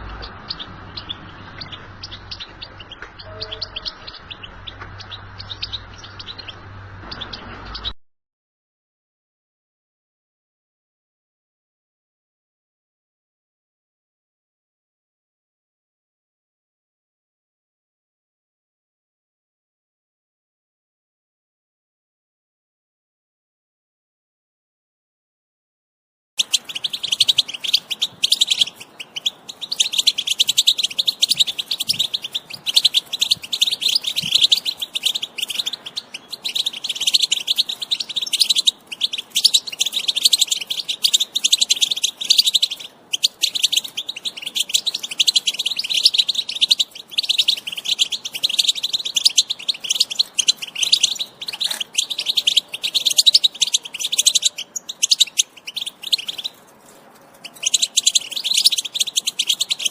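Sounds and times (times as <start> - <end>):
goldfinch singing: 0.0 - 8.0, 26.4 - 59.9.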